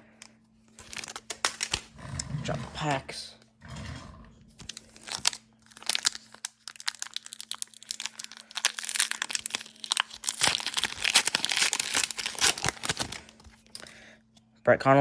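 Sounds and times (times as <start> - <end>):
plastic wrapper tearing and crinkling: 0.8 - 1.9, 4.6 - 13.9.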